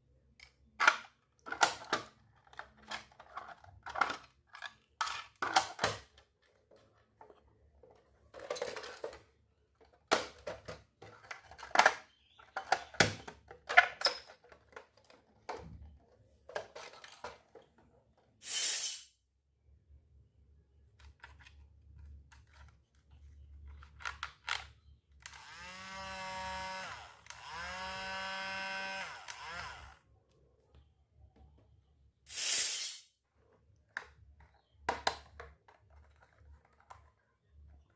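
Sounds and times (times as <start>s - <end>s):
short hiss: 18.4s - 19.2s, 32.3s - 33.1s.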